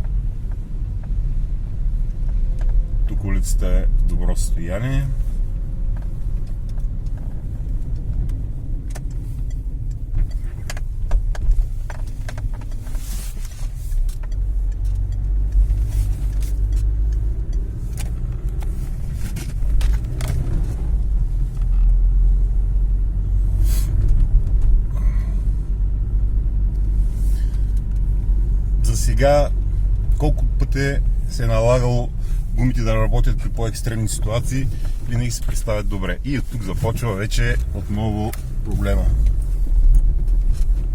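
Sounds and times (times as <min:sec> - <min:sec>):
car engine and tyres rumbling: 0:00.0 - 0:40.9
sharp clicks and knocks: 0:05.9 - 0:20.8.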